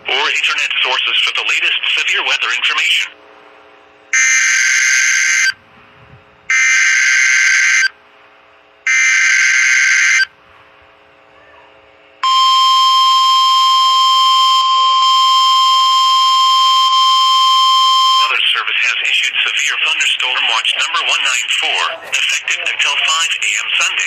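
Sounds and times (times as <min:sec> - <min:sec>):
steady warning alarm tone: 0:04.1 - 0:05.6, 0:06.5 - 0:08.0, 0:08.8 - 0:10.3, 0:12.2 - 0:24.0.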